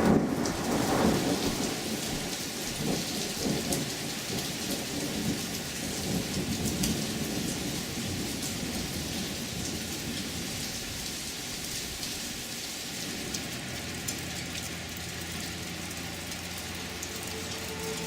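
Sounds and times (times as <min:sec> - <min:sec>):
low rumble of thunder: 0:00.0 - 0:13.4
rain falling: 0:00.0 - 0:18.0
raindrops ticking on surfaces: 0:00.0 - 0:18.0.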